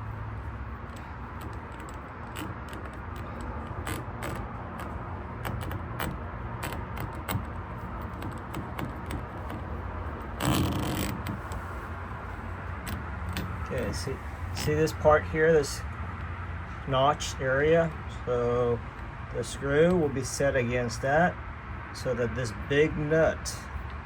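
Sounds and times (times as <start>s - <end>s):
scraping rustle: 0.0s - 16.8s
small metal clicks and scrapes: 0.5s - 15.1s.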